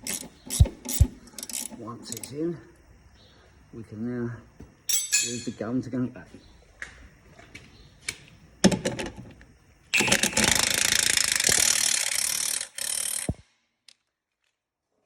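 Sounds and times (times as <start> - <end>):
metal clicks: 0.0 - 2.4.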